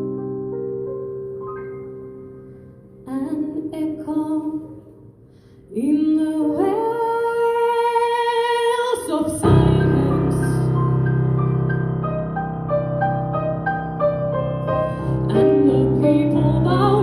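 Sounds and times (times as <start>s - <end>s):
piano: 0.0s - 17.0s
woman singing: 3.1s - 5.0s, 5.7s - 10.8s, 15.2s - 17.0s.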